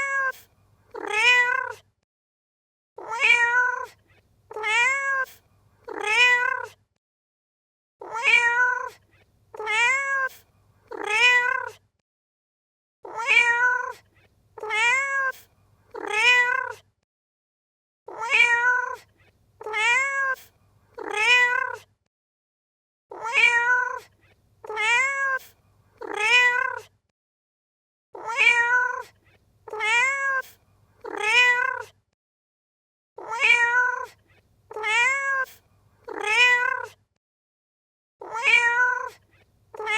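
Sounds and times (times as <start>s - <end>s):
cat meowing: 0.0s - 1.8s, 3.0s - 3.9s, 4.5s - 6.8s, 8.0s - 11.8s, 13.1s - 14.0s, 14.6s - 16.8s, 18.1s - 21.9s, 23.1s - 26.9s, 28.2s - 32.0s, 33.2s - 37.0s, 38.2s - 39.9s.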